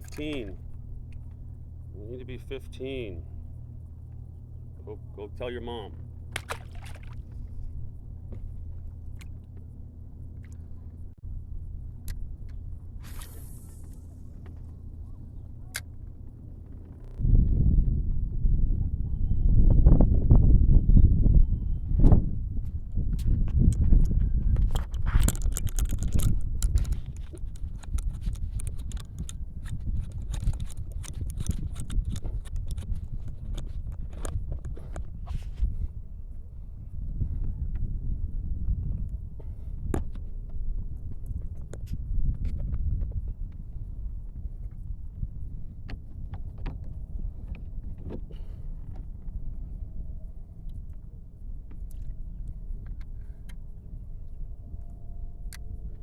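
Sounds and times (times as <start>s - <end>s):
wind buffeting microphone: 16.3s - 56.0s.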